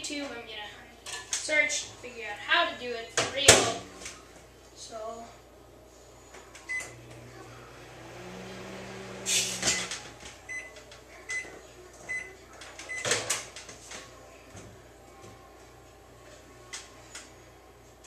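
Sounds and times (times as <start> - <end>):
microwave oven humming: 5.8 - 13.0
microwave keypad beep: 6.7 - 7.0, 10.5 - 11.4, 12.1 - 13.1.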